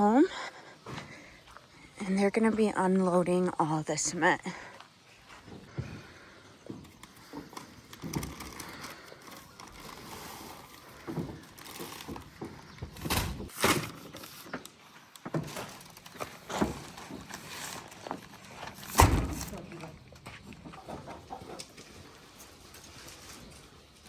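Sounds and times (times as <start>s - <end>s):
knocks and thumps of bags: 6.7s - 14.4s, 15.2s - 19.7s.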